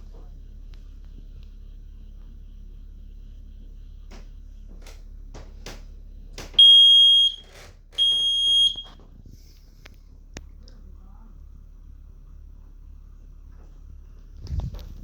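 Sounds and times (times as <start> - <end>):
smoke alarm beeping: 6.5 - 9.0.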